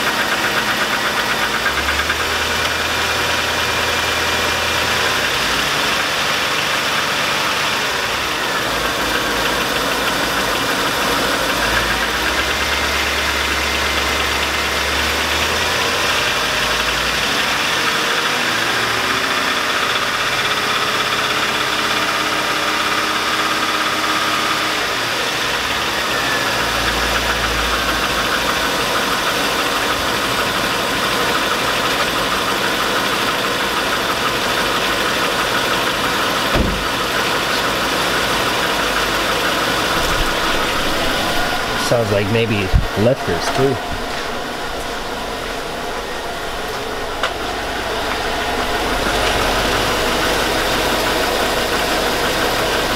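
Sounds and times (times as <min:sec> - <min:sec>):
engine idling with knock: 0:00.0 - 0:52.9
man talking: 0:41.7 - 0:44.1.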